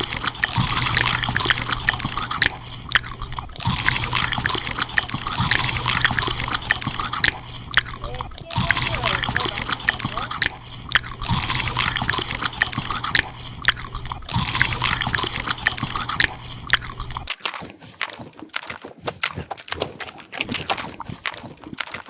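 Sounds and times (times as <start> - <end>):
low background hum: 0.0 - 17.3
squishy toys squeezed crackling: 0.0 - 22.0.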